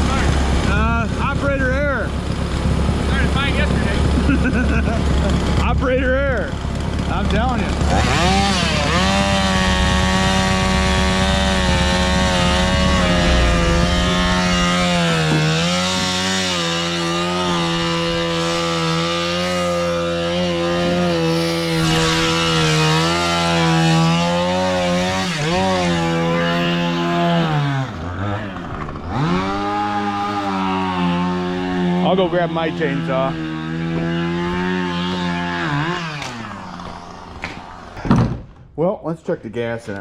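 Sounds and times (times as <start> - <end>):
chainsaw cutting wood: 4.1 - 5.7, 6.5 - 38.5
low engine drone: 10.8 - 18.4.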